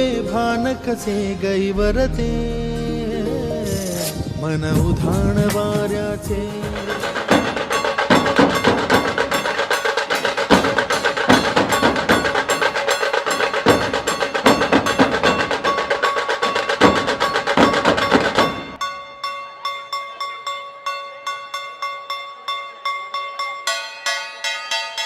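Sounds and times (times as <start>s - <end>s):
held melodic tones: 0.0s - 25.0s
fast drum percussion: 4.7s - 18.8s
wood-block-like strikes: 4.8s - 18.9s.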